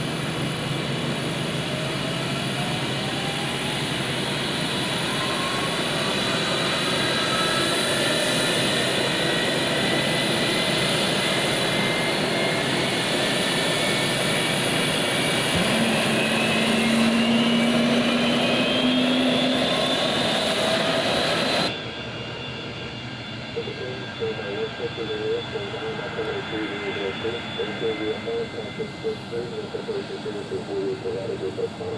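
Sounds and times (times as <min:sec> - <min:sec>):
jet engines whining: 0:00.0 - 0:31.9.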